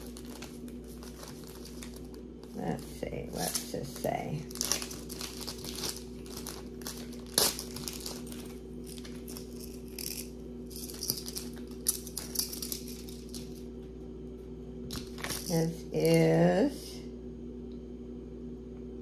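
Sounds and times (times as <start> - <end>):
wrapping crinkling: 0.0 - 13.7, 14.9 - 15.7
steady low hum: 0.0 - 19.0.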